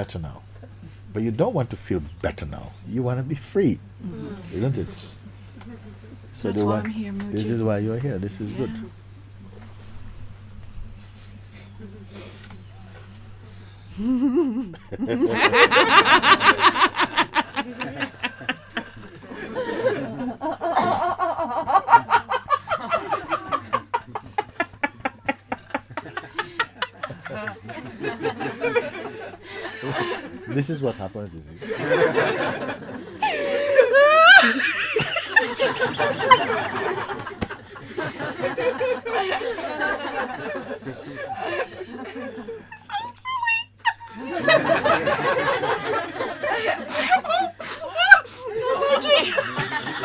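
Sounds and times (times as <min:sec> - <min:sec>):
people laughing softly: 0:04.0 - 0:06.6, 0:10.9 - 0:50.0
person laughing: 0:14.0 - 0:22.3, 0:33.2 - 0:37.2, 0:46.5 - 0:50.0.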